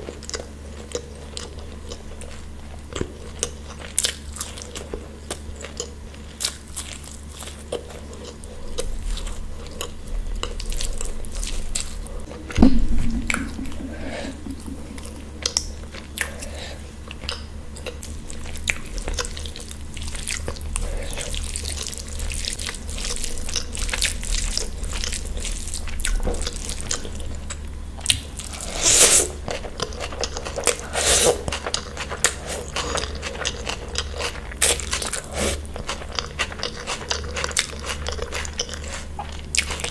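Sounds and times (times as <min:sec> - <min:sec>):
low steady hum: 0:08.2 - 0:30.7
chewing and biting food: 0:29.5 - 0:39.9.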